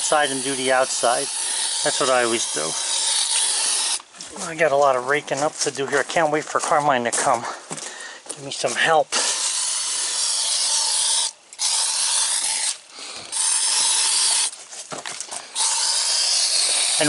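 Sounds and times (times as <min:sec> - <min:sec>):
aerosol can spraying: 0:15.6 - 0:17.0.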